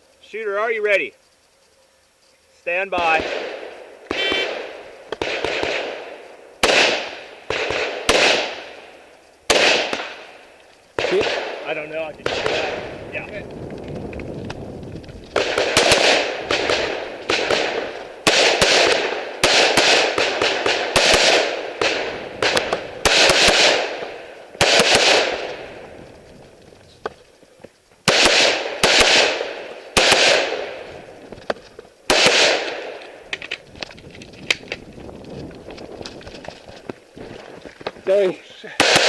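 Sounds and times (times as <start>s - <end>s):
rifle shots echoing: 3.0s - 10.4s, 11.0s - 13.4s, 15.3s - 25.8s, 28.0s - 31.1s, 32.1s - 33.5s, 38.1s - 39.0s.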